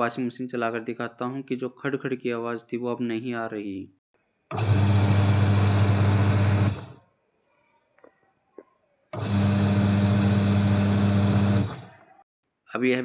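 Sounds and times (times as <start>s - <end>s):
washing machine motor humming: 4.5s - 7.0s, 9.2s - 12.0s.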